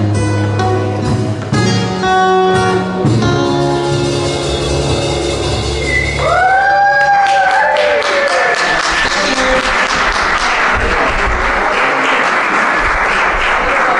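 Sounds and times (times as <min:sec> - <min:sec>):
audience applause: 0:06.2 - 0:13.9.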